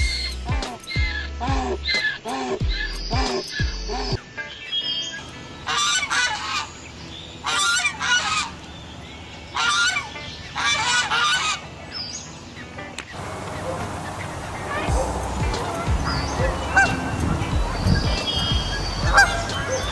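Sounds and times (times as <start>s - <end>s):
goose honking: 5.6s - 8.6s, 9.5s - 11.6s, 13.2s - 19.9s.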